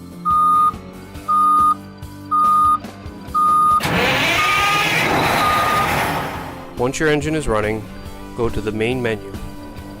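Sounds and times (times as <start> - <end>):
warning alarm beeping: 3.4 - 3.9, 5.2 - 6.0
diesel engine starting: 3.4 - 6.8.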